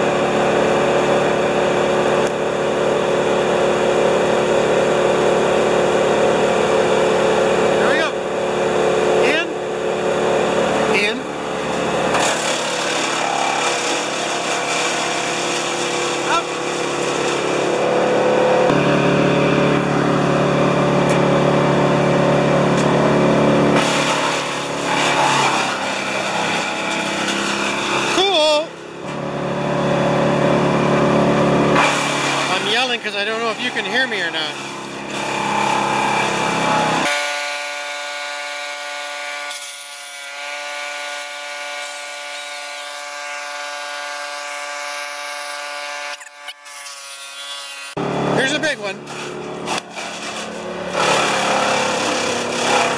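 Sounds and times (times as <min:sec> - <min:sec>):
large engine running: 0:00.0 - 0:37.0, 0:48.0 - 0:52.9.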